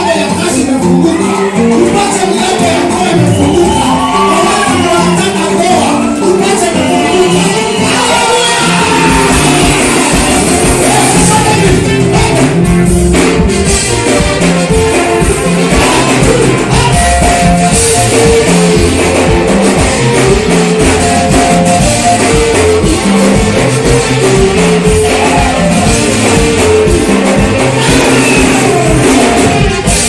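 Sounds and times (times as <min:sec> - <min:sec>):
people singing: 0:00.0 - 0:12.6, 0:15.0 - 0:20.2, 0:22.1 - 0:30.0
worship band playing: 0:00.0 - 0:30.0.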